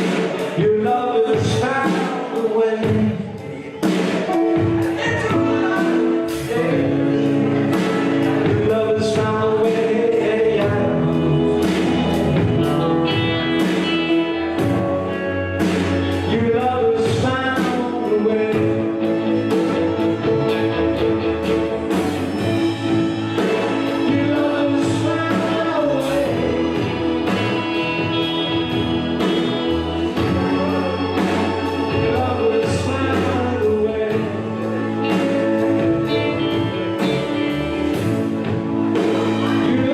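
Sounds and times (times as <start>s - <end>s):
gospel music with choir: 0.0s - 39.9s
steady beat: 0.0s - 39.9s.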